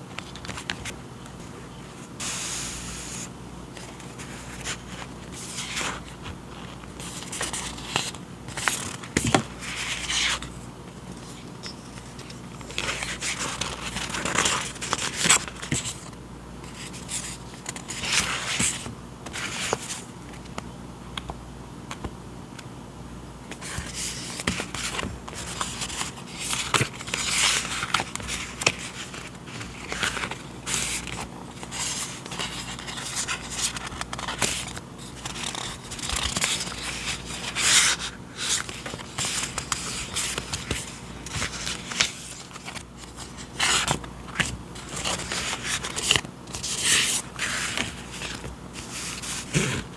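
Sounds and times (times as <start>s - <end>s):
packaging rustling and crinkling: 11.9s - 18.8s, 23.6s - 49.9s.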